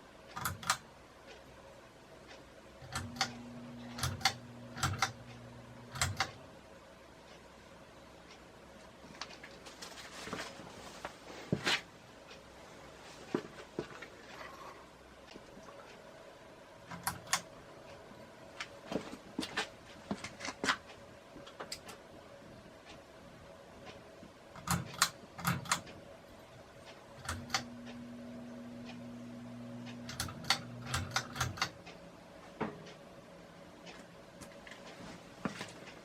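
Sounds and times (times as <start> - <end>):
ceiling fan humming: 0.0 - 36.0
irregular clicks and ticks: 0.2 - 1.6, 2.2 - 6.6, 16.8 - 18.0, 18.6 - 22.0, 23.8 - 33.0.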